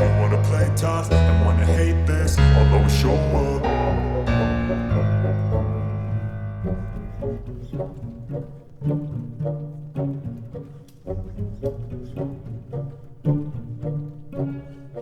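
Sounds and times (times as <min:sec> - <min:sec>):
held chord: 0:00.0 - 0:08.2
low plucked string notes: 0:00.0 - 0:09.5.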